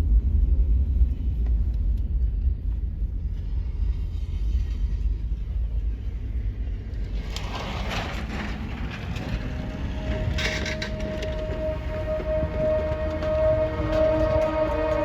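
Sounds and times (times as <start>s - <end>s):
loud low rumble: 0.0s - 15.0s.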